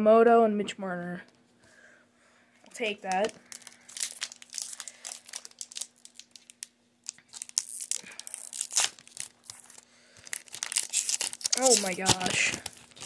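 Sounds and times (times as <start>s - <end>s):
wrapper crinkling and tearing: 2.8s - 13.0s.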